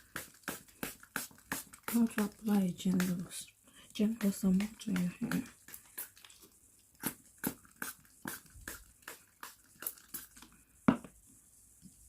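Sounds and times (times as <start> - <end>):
spray bottle spritzing: 0.0 - 3.3, 7.0 - 10.4.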